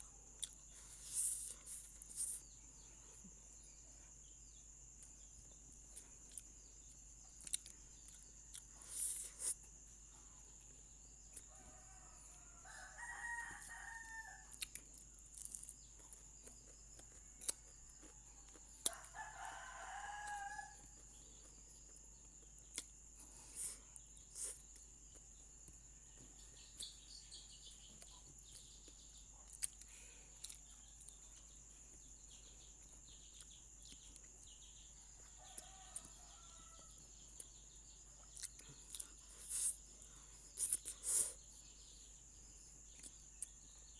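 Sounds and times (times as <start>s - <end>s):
rooster crowing: 11.5s - 14.5s, 18.8s - 21.0s, 35.0s - 37.1s.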